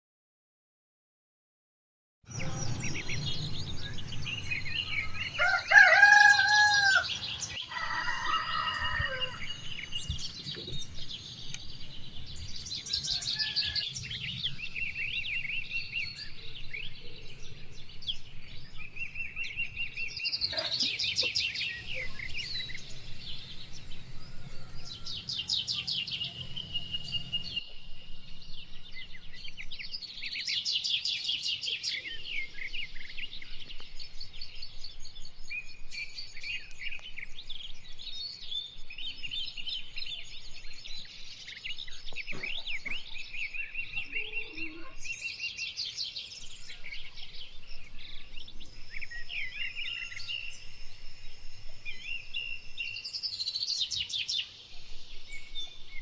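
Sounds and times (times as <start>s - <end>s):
small birds chirping: 2.3s - 56.0s
rooster crowing: 4.2s - 9.7s, 12.8s - 14.6s, 20.5s - 27.6s
fowl call: 5.4s - 9.4s.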